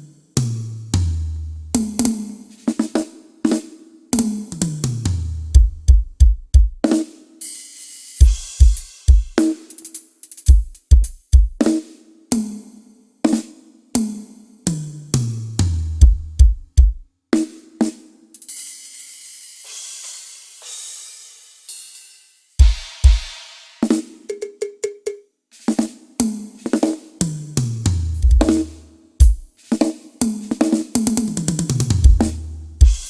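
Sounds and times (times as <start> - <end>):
cymbal crash: 7.4 - 9.6
tom drum fills: 8.2 - 9.7, 22.6 - 24.6, 27.6 - 30.0, 30.9 - 33.0
snare drum hits: 22.6 - 24.5, 28.2 - 33.0
bass drum strokes: 27.8 - 29.4.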